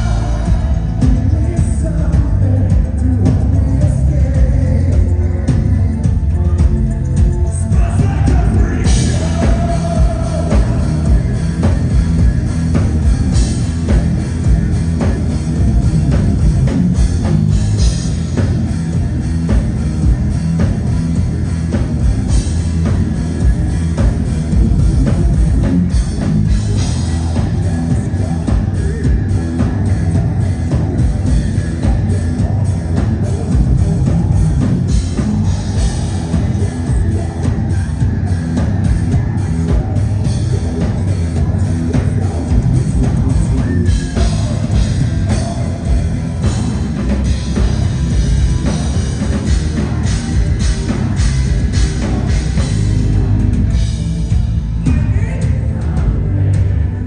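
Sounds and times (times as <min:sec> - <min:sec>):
pounding drums: 0:00.0 - 0:56.2
guitars: 0:00.0 - 0:57.0
heavy metal band playing live: 0:00.0 - 0:57.0.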